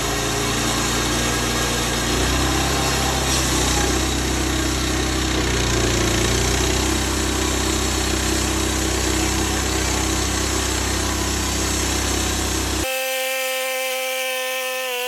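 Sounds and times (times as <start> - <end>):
engine drone: 0.0 - 14.0
saw blade hissing: 11.1 - 15.0.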